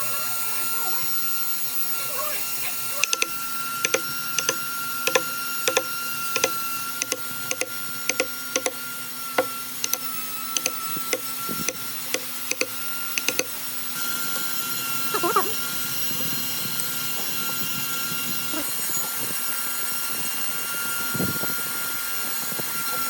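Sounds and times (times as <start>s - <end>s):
sharp knocks: 3.9s - 8.8s.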